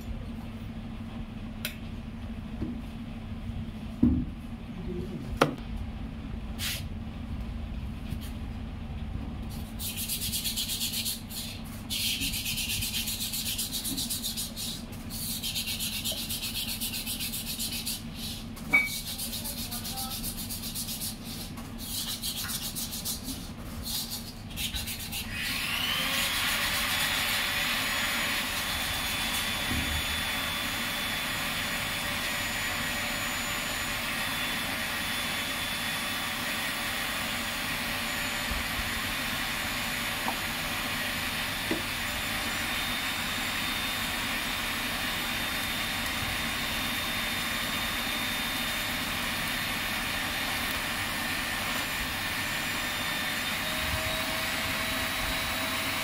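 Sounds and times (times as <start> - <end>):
power tool motor whine: 25.2 - 56.0.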